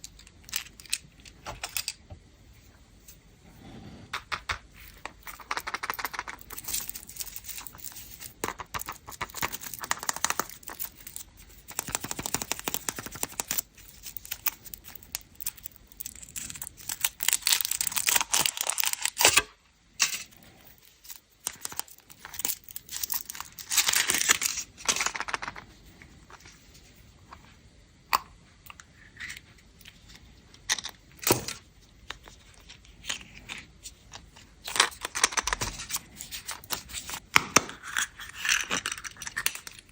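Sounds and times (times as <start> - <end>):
foil wrapper crinkling and tearing: 5.3 - 19.5, 20.8 - 25.6, 34.3 - 39.9.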